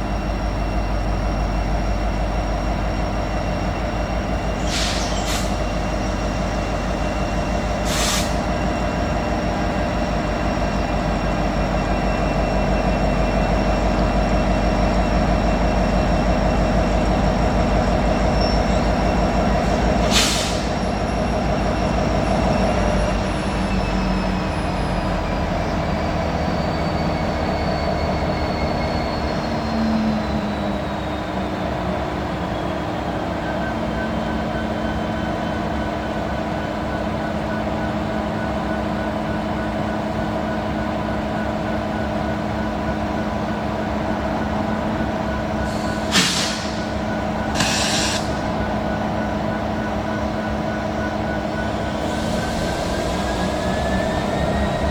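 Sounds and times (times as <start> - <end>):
train wheels rumbling on rail: 0.0 - 54.9
short hiss: 47.6 - 48.4
wheels squealing: 50.0 - 54.9.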